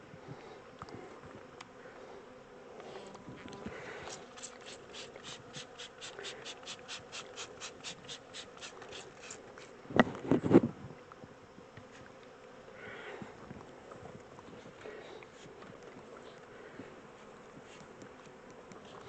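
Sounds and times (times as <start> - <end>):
honey bees humming: 0.0 - 10.0, 11.0 - 19.0
short raspy strokes: 3.7 - 9.8.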